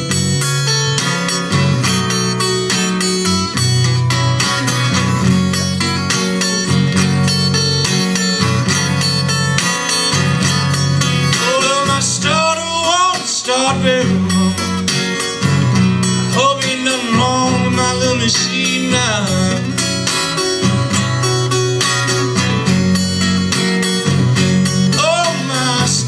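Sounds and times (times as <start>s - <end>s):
acoustic guitar blues: 0.0s - 26.0s.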